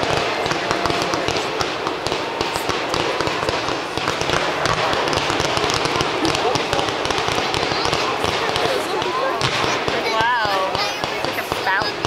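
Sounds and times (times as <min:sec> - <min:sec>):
fireworks popping and crackling: 0:00.0 - 0:12.0
steady noisy background: 0:00.0 - 0:12.0.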